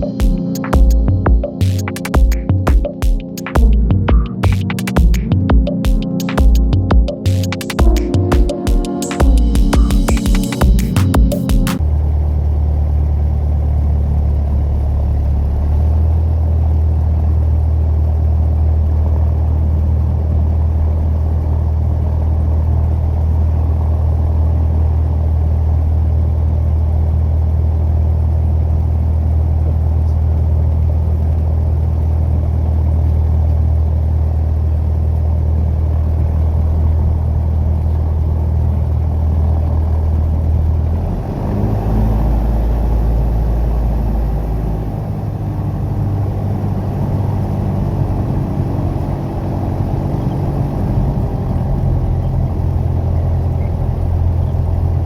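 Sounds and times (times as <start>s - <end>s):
light aircraft engine drone: 11.8s - 55.0s.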